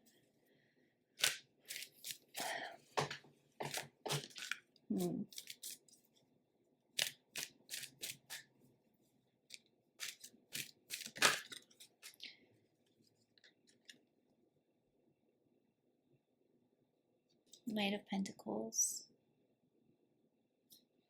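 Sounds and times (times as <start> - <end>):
cards snapping and sliding: 1.2 - 2.4, 3.6 - 4.6, 5.3 - 5.9, 7.0 - 8.5, 10.0 - 12.2.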